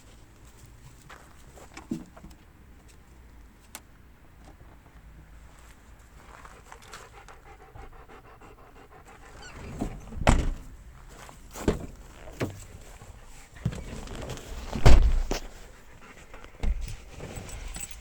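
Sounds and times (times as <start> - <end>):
dog panting: 6.2 - 10.1, 12.7 - 18.0
loud thumps: 14.7 - 15.5.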